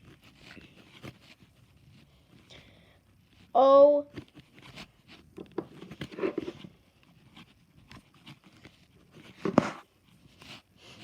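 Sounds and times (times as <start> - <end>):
hands working modelling clay: 0.0 - 11.0.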